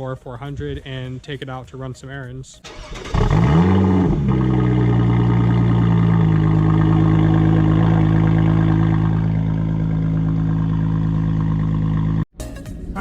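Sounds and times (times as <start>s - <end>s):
car engine starting and idling: 2.6s - 12.3s.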